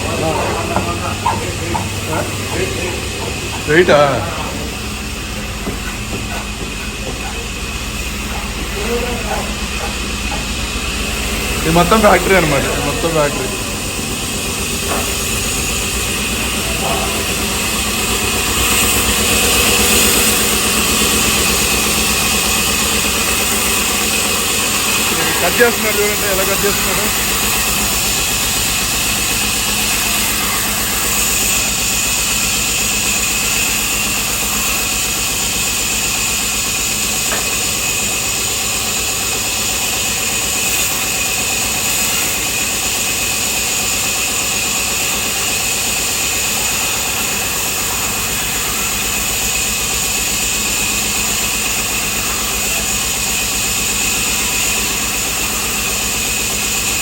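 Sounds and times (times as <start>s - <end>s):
power saw cutting wood: 0.0s - 57.0s.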